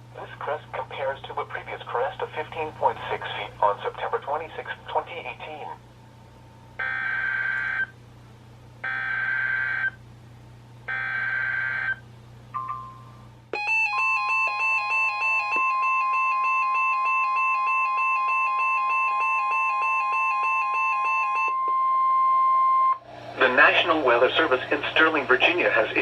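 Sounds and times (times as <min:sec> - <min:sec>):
warning alarm tone: 0:06.8 - 0:07.9, 0:08.8 - 0:10.0, 0:10.9 - 0:12.0, 0:12.6 - 0:23.0.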